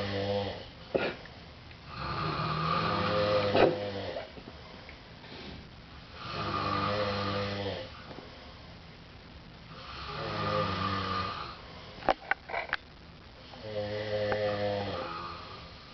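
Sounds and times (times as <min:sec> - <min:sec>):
men snoring loudly: 0:00.0 - 0:00.7, 0:01.9 - 0:04.3, 0:06.2 - 0:07.9, 0:09.7 - 0:11.6, 0:13.6 - 0:15.7
sharp snort: 0:00.0 - 0:01.2, 0:03.1 - 0:04.3.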